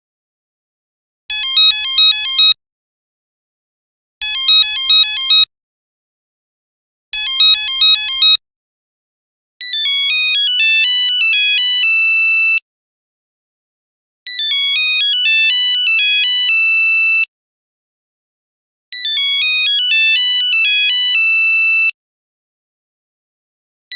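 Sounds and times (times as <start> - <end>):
melodic phone ringtone: 1.3 - 2.6, 4.2 - 5.5, 7.2 - 8.4, 9.6 - 12.6, 14.3 - 17.3, 19.0 - 22.0.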